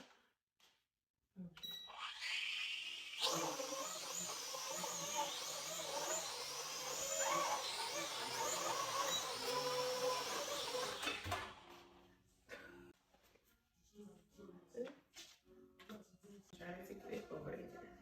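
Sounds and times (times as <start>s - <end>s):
toy drone propellers whirring: 1.9s - 11.7s.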